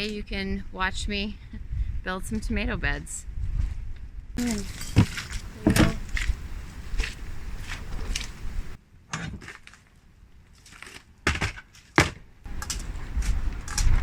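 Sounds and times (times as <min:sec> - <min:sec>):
sharp knocks: 0:04.4 - 0:06.4.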